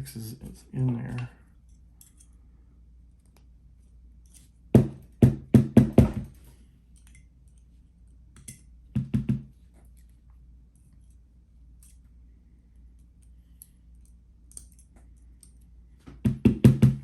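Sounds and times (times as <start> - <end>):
sharp knocks on hard surface: 4.8 - 6.3, 9.0 - 9.5.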